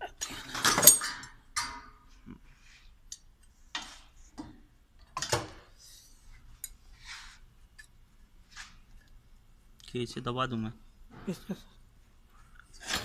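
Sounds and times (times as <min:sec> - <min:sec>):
metal parts clinking: 0:00.5 - 0:01.7.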